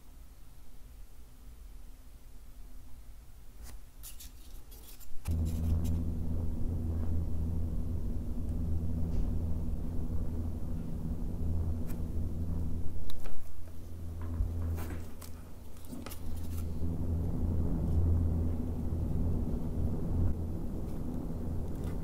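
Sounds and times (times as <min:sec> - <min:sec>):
computer fan humming: 0:05.2 - 0:22.0.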